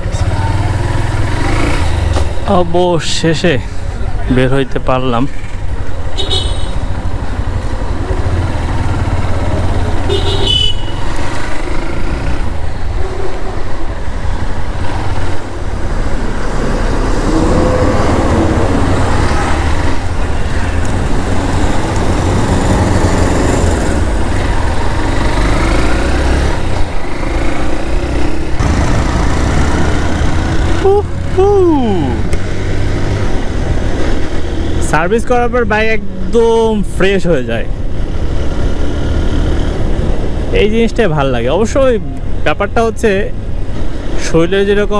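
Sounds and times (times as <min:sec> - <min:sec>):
vehicle horns tooting: 0:06.2 - 0:06.9, 0:10.0 - 0:11.1.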